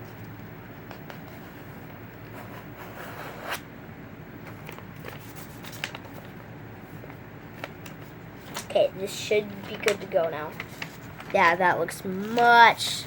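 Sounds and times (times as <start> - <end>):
faint paper rustles: 4.4 - 13.0
paper crinkle: 4.5 - 12.6.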